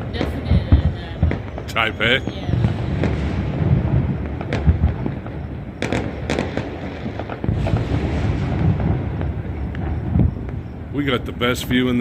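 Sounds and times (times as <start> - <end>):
sharp firework cracks: 0.0 - 11.0
distant fireworks rumble: 0.0 - 12.0.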